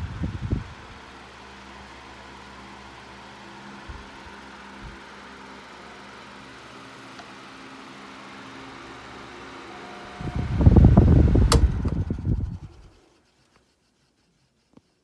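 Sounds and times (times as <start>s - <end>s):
table fan whooshing: 9.3s - 13.1s
sharp click: 11.4s - 12.1s.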